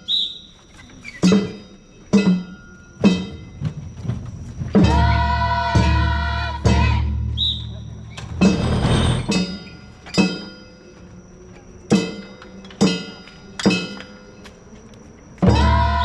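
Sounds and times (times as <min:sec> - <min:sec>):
festival music: 0:04.1 - 0:10.0.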